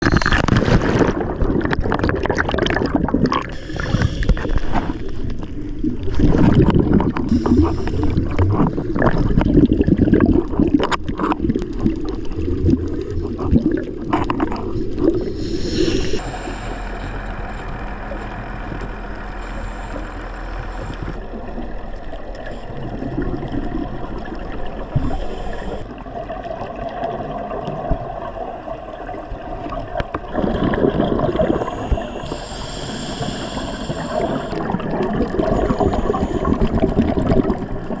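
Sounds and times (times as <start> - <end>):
exhaled bubbles bursting: 0.0 - 38.0
regulator inhale hiss: 3.5 - 5.8, 7.3 - 8.6, 15.0 - 21.3, 24.1 - 25.9, 31.1 - 37.3.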